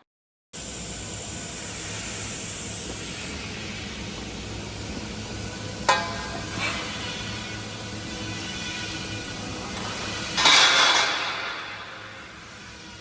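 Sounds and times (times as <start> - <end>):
welding arc crackling: 0.6 - 13.0.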